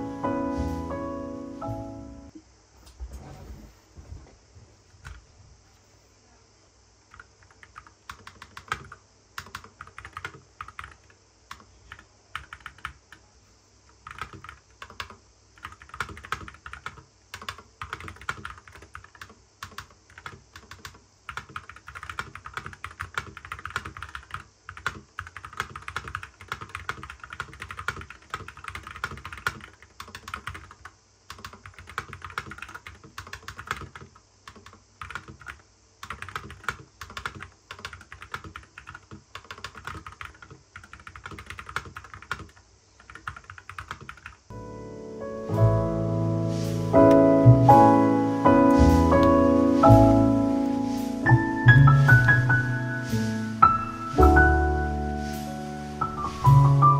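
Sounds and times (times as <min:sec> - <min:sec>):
keyboard typing: 0:07.1 - 0:13.2, 0:14.0 - 0:44.4.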